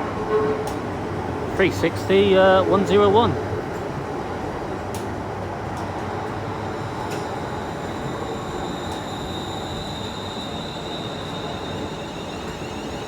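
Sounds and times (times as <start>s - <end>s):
train rumble: 0.0s - 13.0s
high even whine: 5.8s - 13.0s.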